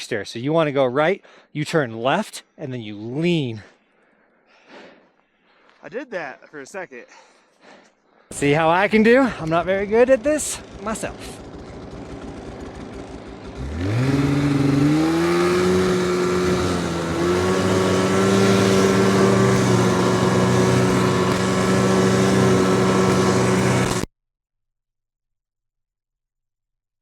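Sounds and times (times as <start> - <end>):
snowmobile engine revving: 8.3 - 24.1.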